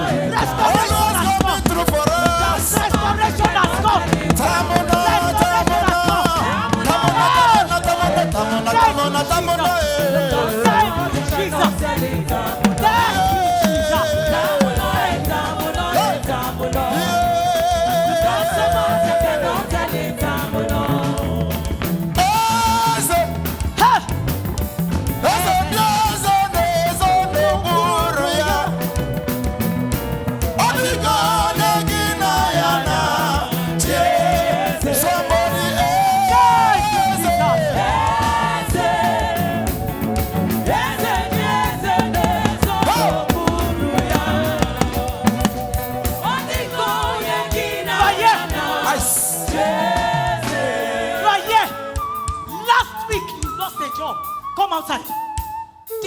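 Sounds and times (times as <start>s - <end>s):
person singing: 0.0s - 24.0s, 40.6s - 49.8s
gospel band with drums: 0.0s - 56.0s.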